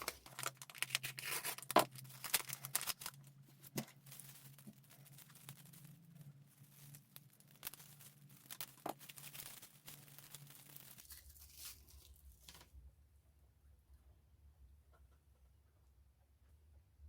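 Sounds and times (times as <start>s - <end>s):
packaging tearing and crinkling: 0.0s - 12.7s.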